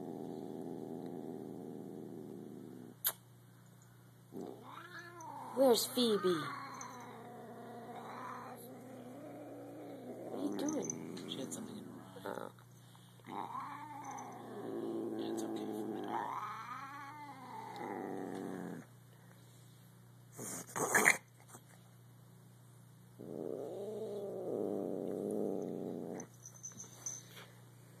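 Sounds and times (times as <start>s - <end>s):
cat yowling: 4.5s - 8.7s.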